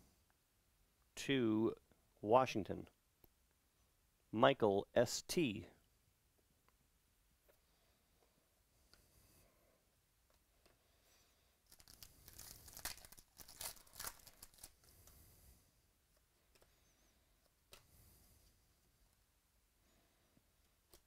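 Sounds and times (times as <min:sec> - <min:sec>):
card pack wrapper crinkling and tearing: 0:11.7 - 0:14.9.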